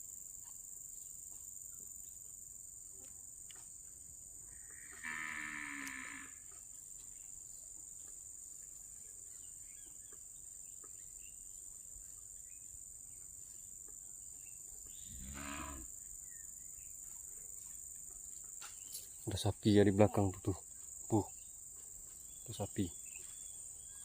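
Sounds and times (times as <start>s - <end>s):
high-pitched insect chorus: 0.0s - 24.0s
cow mooing: 4.7s - 6.4s, 15.1s - 15.9s.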